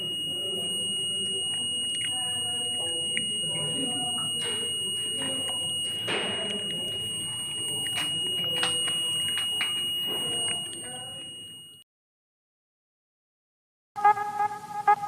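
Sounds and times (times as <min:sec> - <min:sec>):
background voices: 0:00.0 - 0:11.4
high-pitched electronic buzzer: 0:00.0 - 0:11.8.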